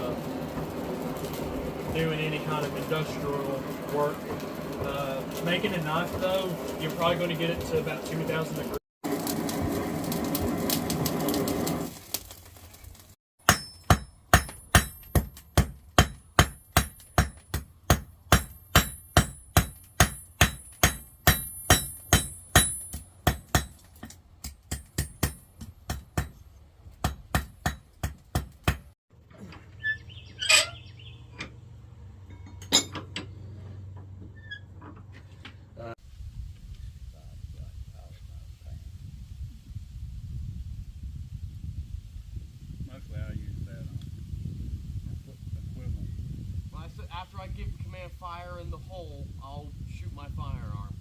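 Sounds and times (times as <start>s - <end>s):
hammer striking iron on anvil: 13.4s - 26.4s, 27.0s - 28.9s.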